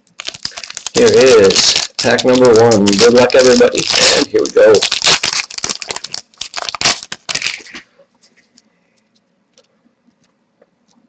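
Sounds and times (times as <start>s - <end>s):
card pack wrapper crinkling: 0.0s - 7.8s.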